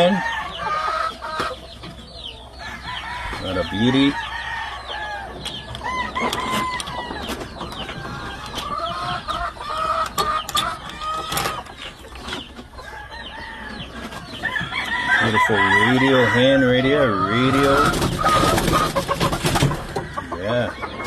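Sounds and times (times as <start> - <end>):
hens clucking: 0.0 - 21.0
roosters crowing: 0.0 - 21.0.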